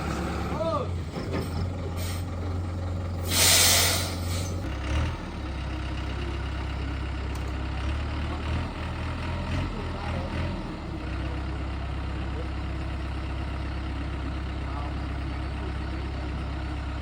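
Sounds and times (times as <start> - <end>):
diesel engine droning: 0.0 - 17.0
loud air hiss: 3.2 - 4.6.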